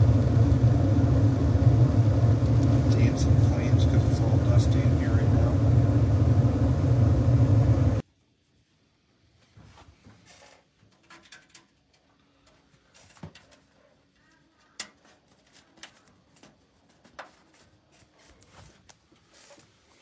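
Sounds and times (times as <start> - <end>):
small clicks and ticks: 11.0 - 16.6.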